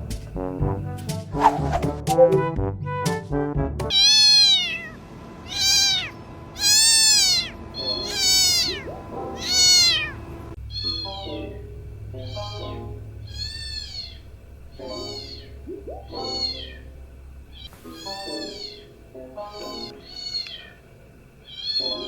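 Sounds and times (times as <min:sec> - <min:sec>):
cat meowing: 0:03.9 - 0:11.5, 0:12.1 - 0:16.9, 0:17.5 - 0:18.9, 0:19.5 - 0:20.8, 0:21.4 - 0:22.0
low steady hum: 0:04.9 - 0:22.0.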